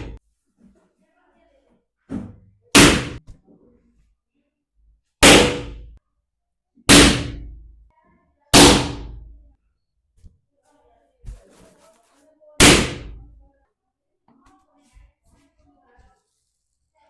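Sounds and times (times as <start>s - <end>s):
balloons bursting: 2.7s - 3.2s, 5.2s - 5.9s, 6.9s - 7.7s, 8.5s - 9.4s, 12.6s - 13.3s.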